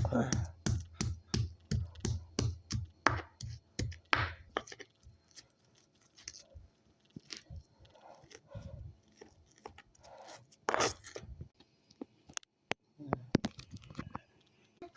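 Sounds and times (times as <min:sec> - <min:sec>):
pestle pounding in a mortar: 0:00.0 - 0:04.8.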